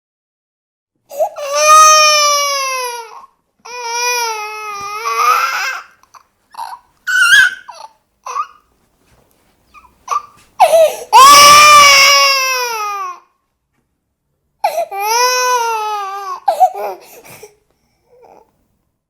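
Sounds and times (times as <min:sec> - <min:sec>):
baby crying: 0:01.1 - 0:08.6, 0:09.8 - 0:13.3, 0:14.6 - 0:17.5, 0:18.1 - 0:18.5.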